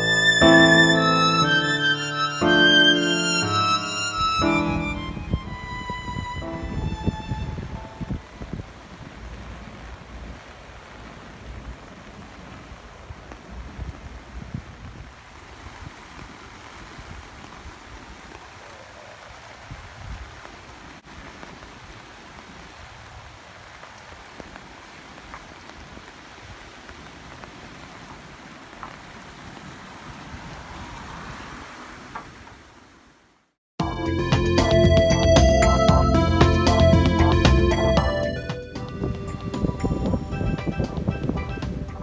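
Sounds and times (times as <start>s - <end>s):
strong wind gusts on microphone: 4.2s - 10.5s, 12.4s - 21.1s, 29.0s - 32.7s, 38.8s - 42.0s.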